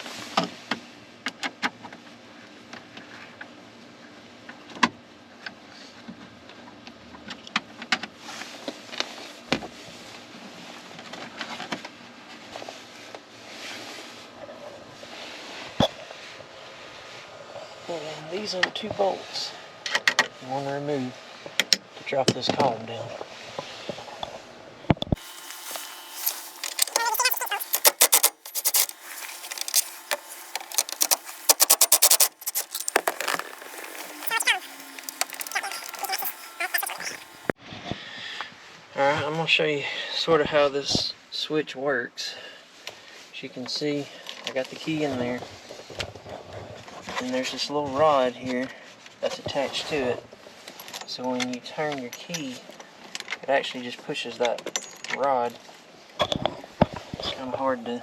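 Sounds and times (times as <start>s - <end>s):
hand tools and metal parts clicking: 25.2s - 37.5s
metallic scrapes: 25.2s - 37.5s.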